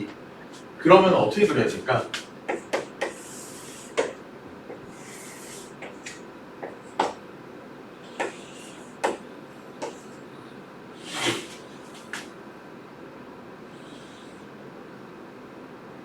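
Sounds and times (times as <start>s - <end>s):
sharp taps and clicks: 2.1s - 3.3s, 4.0s - 4.8s, 5.8s - 7.2s, 8.2s - 8.4s, 9.0s - 9.2s, 9.8s - 10.0s
pen scratching on paper: 2.5s - 6.8s, 8.1s - 9.2s.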